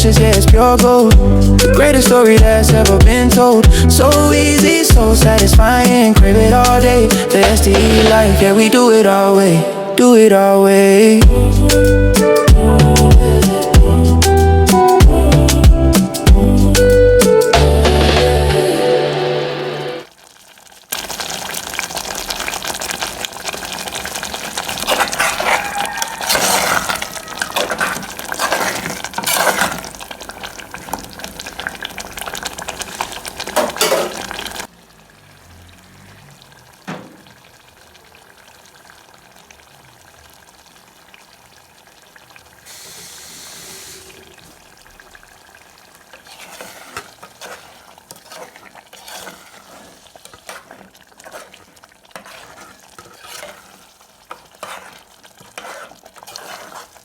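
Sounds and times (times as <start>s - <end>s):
food sizzling in a pan: 18.7s - 57.0s
stirring in a pan: 20.1s - 38.0s, 41.5s - 57.0s.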